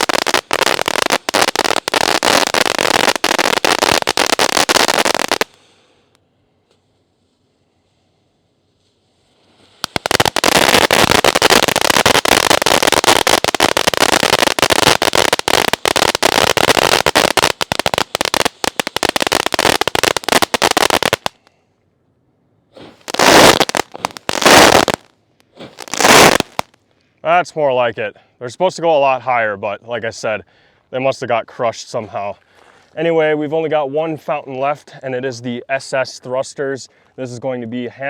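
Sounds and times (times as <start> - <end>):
firework crackling: 0.0 - 5.6, 9.2 - 21.5, 22.8 - 26.8
loud firework bursts: 0.0 - 5.7, 9.5 - 21.5, 22.8 - 26.8.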